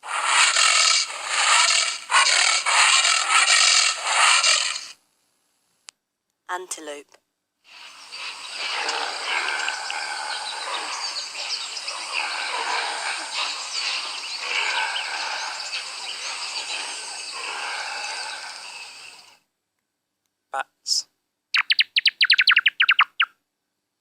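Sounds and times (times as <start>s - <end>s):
insect noise: 0.0s - 4.9s, 7.7s - 19.4s
bird chirps: 7.7s - 19.4s, 21.5s - 23.4s.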